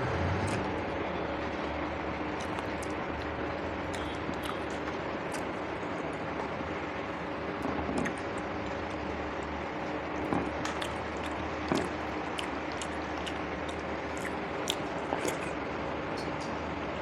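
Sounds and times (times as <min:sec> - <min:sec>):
person chewing food: 0:02.3 - 0:06.5, 0:07.6 - 0:08.5, 0:10.1 - 0:15.6
wet mouth clicks and smacks: 0:02.4 - 0:02.9, 0:03.9 - 0:04.6, 0:10.6 - 0:15.6.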